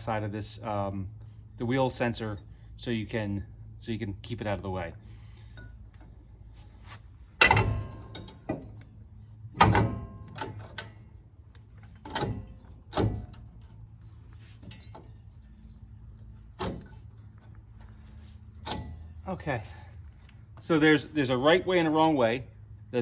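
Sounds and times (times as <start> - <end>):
metal clanks: 7.4 - 8.9, 9.6 - 11.1, 11.7 - 13.8, 16.4 - 19.2.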